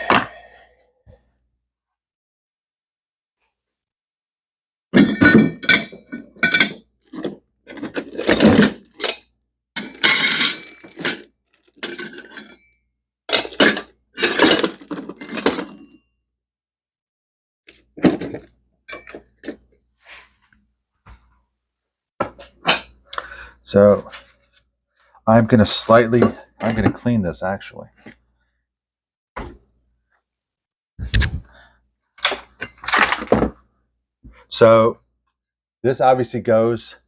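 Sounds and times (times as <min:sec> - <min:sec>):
small metal parts clinking: 0:09.8 - 0:12.7.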